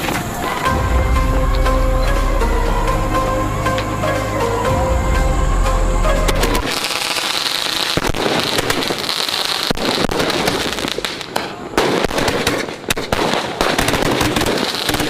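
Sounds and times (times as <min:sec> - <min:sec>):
firecrackers popping: 0:00.0 - 0:02.4, 0:06.1 - 0:15.0
steady hiss: 0:00.0 - 0:11.8.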